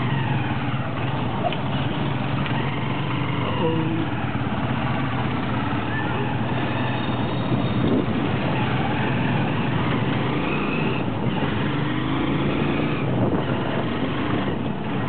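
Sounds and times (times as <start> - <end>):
road noise rushing: 0.0 - 15.0
small motorcycle engine running: 0.0 - 15.0.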